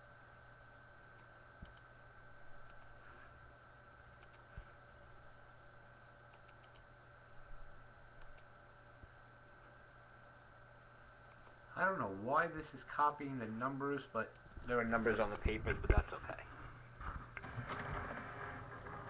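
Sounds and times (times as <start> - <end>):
low electrical hum: 0.0 - 19.0
computer mouse and keyboard clicks: 1.2 - 1.9, 2.6 - 3.0, 4.2 - 4.6, 6.3 - 6.9, 8.2 - 8.5, 11.3 - 11.6.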